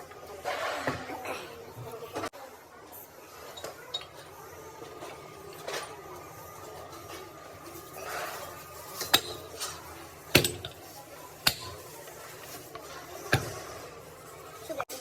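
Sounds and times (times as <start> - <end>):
tools knocking on metal: 9.0 - 13.8.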